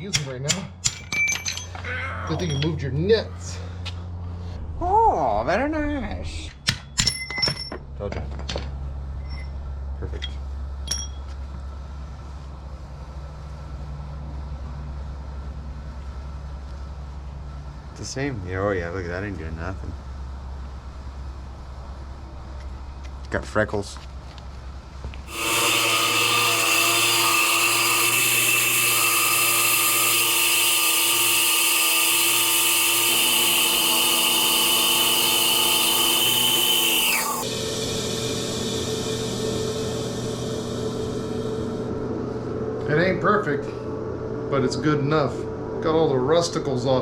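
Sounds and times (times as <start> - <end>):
low machine hum: 0.0 - 47.0
power tool high whine: 25.3 - 42.0.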